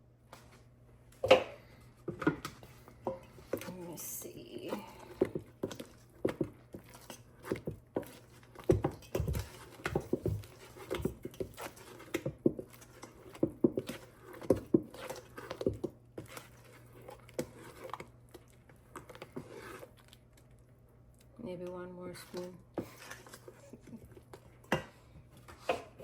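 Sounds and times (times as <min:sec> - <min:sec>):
metal spoon knocking and scraping bowl: 0:05.2 - 0:16.4.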